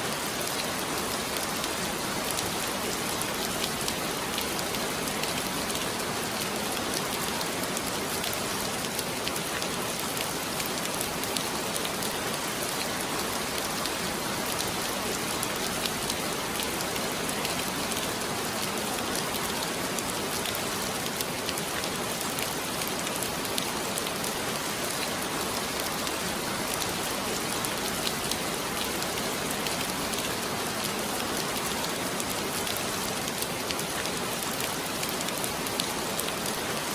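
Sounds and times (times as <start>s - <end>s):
raindrops pattering on surface: 0.0s - 36.9s.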